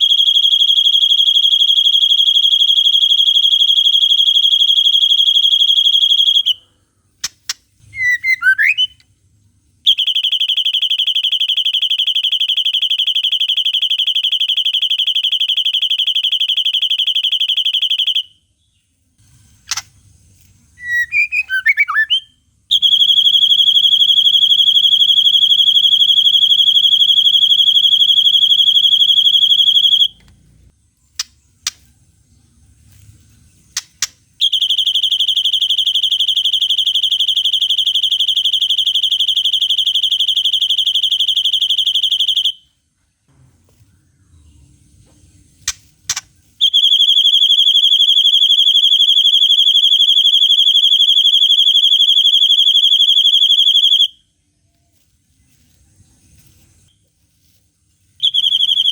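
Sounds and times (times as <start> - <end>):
bird high-pitched trill: 7.9 - 9.0, 20.8 - 30.1, 58.2 - 58.9.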